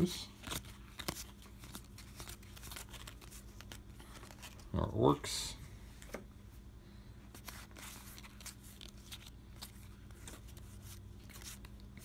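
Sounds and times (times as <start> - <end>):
playing cards clicking and rustling: 0.0 - 4.7, 7.3 - 12.0
low steady hum: 0.0 - 12.0.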